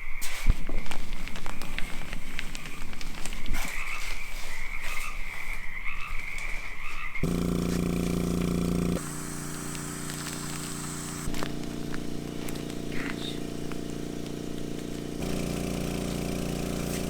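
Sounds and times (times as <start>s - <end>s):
steady machine hum: 7.2s - 17.0s.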